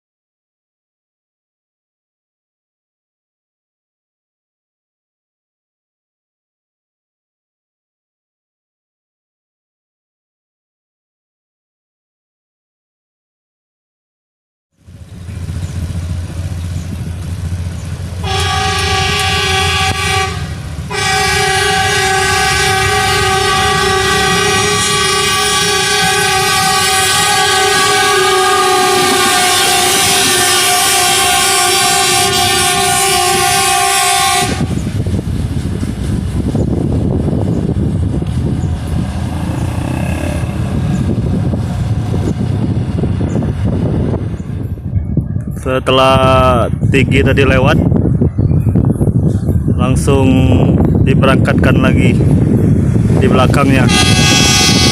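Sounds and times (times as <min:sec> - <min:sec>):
diesel engine rumbling: 0:14.8 - 0:54.9
train horn: 0:18.2 - 0:34.8, 0:53.8 - 0:54.9.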